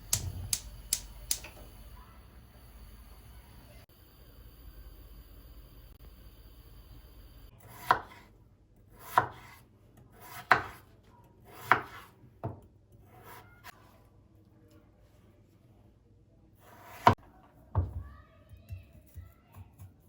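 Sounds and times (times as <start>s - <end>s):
knife cutting vegetable: 9.0s - 10.9s, 11.5s - 12.2s.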